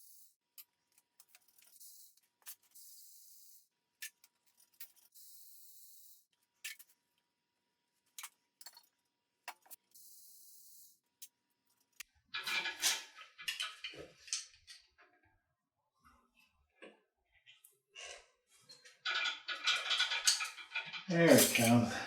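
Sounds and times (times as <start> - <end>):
hand tools clinking on metal: 19.1 - 22.0.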